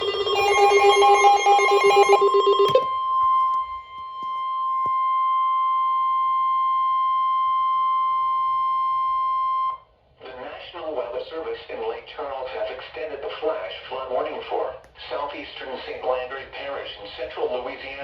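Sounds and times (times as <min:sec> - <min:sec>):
pulsing electronic warble: 0:00.0 - 0:02.9
steady high alarm tone: 0:00.0 - 0:09.8.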